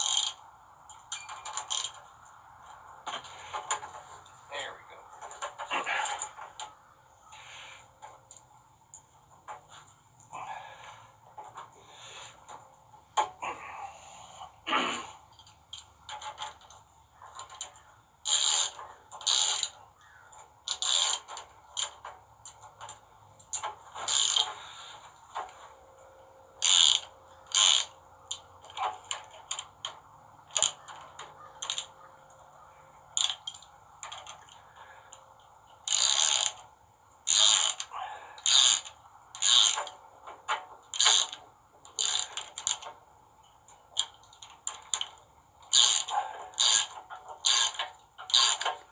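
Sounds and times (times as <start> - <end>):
ratchet wrench clicking: 0.0 - 2.0, 17.4 - 19.8, 20.7 - 22.0, 23.4 - 24.6, 26.6 - 28.8, 30.5 - 31.0, 31.6 - 31.9, 33.2 - 34.5, 35.8 - 40.0, 40.9 - 42.9, 44.0 - 48.8.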